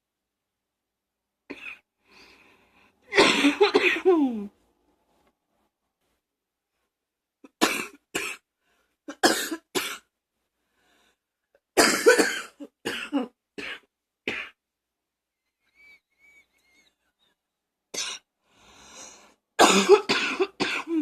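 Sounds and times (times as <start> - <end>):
person coughing: 3.1 - 4.4, 9.1 - 10.1, 11.8 - 14.6, 19.6 - 21.0.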